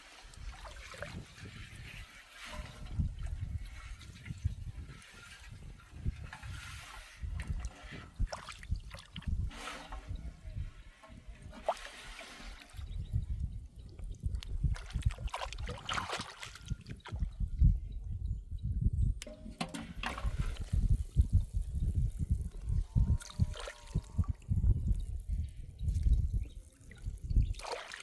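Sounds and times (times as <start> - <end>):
wind on microphone: 0.0 - 27.8
water splashing: 11.4 - 12.8, 14.6 - 17.2, 27.5 - 28.0.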